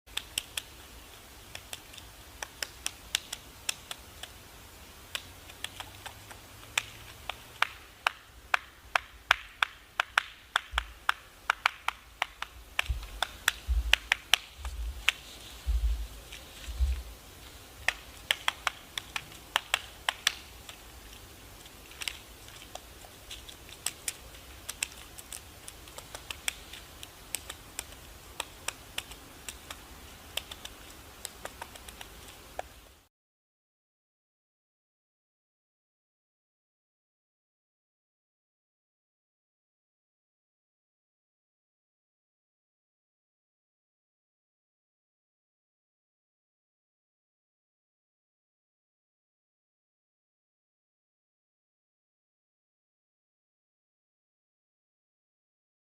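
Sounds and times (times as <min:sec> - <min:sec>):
dull low thumps: 0:12.9 - 0:17.2.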